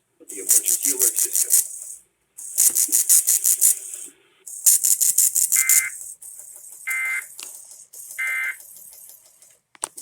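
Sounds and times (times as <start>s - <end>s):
raspy digital chirps: 4.8s - 6.2s, 6.8s - 7.4s, 8.0s - 8.7s.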